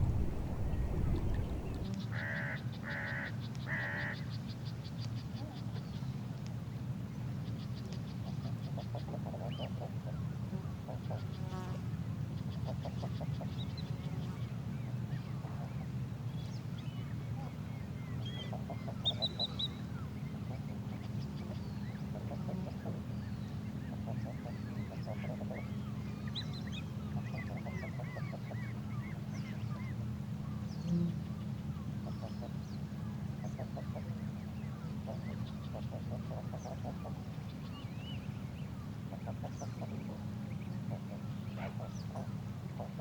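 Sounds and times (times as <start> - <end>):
birds honking low notes: 0.0 - 2.0
birds trilling and chirping: 0.0 - 2.0
low rumble: 0.0 - 2.0.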